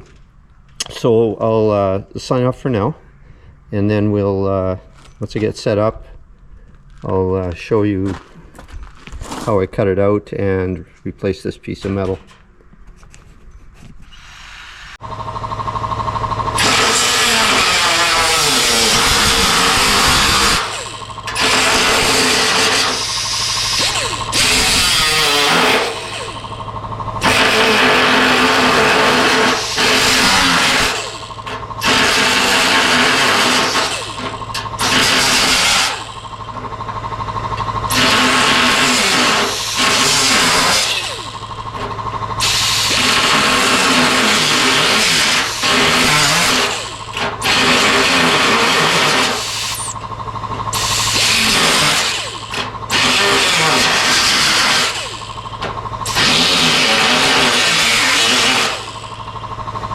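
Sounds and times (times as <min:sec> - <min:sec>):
power cutting tool cutting steel: 0:14.1 - 0:36.7, 0:37.5 - 0:50.1, 0:50.7 - 0:59.4.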